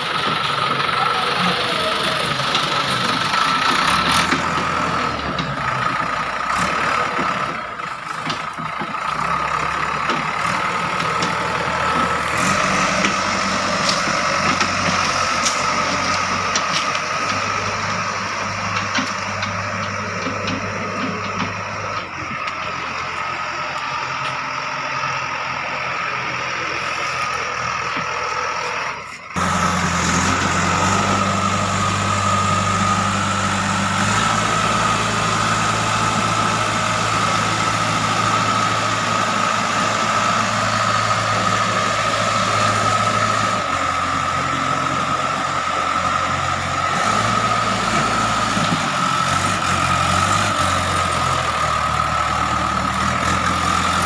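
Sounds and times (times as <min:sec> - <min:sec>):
diesel engine running: 0:00.0 - 0:54.0.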